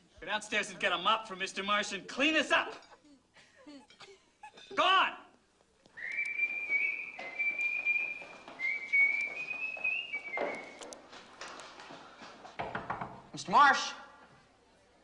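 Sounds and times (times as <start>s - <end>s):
high whistle: 6.0s - 10.9s.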